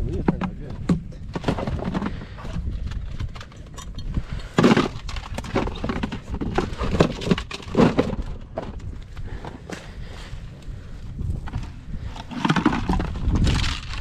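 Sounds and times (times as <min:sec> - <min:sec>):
irregular knocks and clatters: 0:00.0 - 0:09.7.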